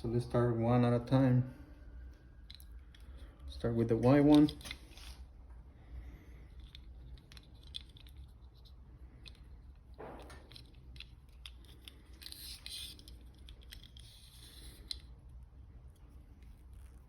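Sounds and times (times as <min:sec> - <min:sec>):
small clicks and scrapes of wire: 0:06.5 - 0:17.0.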